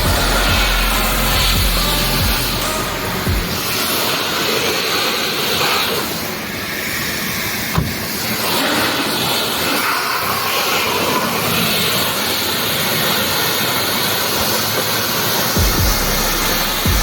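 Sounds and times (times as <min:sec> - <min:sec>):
low thumps: 0:00.0 - 0:03.8, 0:15.6 - 0:17.0
pressure washer spraying water: 0:00.0 - 0:17.0.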